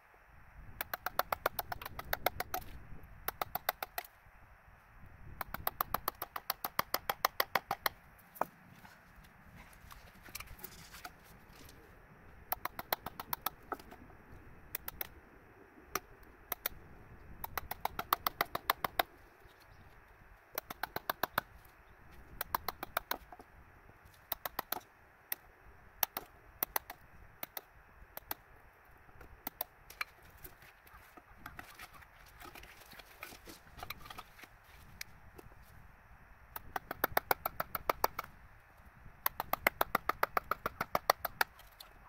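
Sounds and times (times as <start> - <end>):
hammer tapping on a chisel: 5.4 - 8.0.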